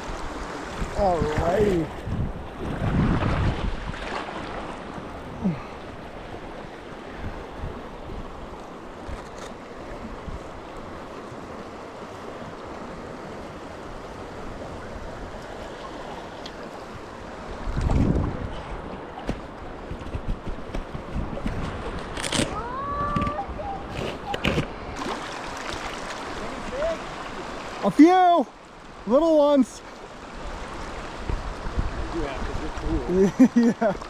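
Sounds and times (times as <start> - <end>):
wind buffeting microphone: 0.0 - 11.6, 17.2 - 24.7, 30.4 - 33.2
river water rushing: 0.0 - 19.9, 21.7 - 34.0.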